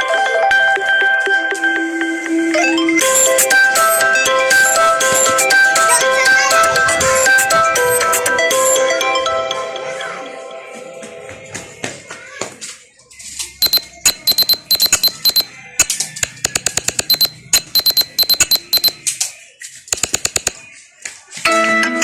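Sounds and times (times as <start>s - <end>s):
clicking phone ringtone with beeps: 13.6s - 19.0s, 20.0s - 20.6s.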